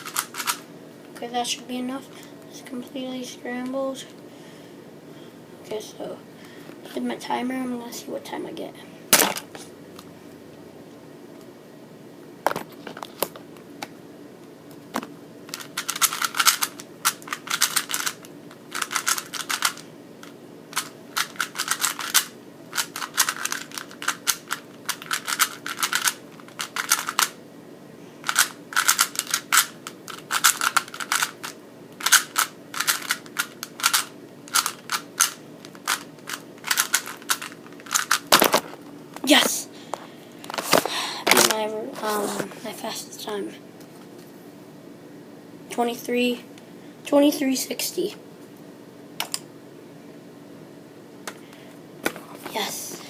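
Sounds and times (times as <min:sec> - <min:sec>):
plastic cube layers clicking: 0:00.0 - 0:00.6, 0:15.5 - 0:19.8, 0:20.8 - 0:27.3, 0:28.3 - 0:38.6.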